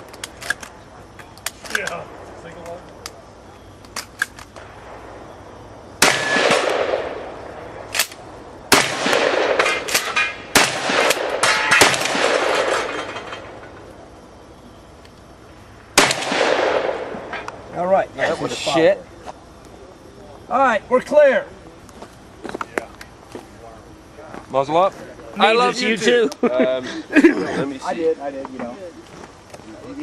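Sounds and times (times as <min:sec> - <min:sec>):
shotgun shots: 0:06.0 - 0:13.6, 0:16.0 - 0:17.4.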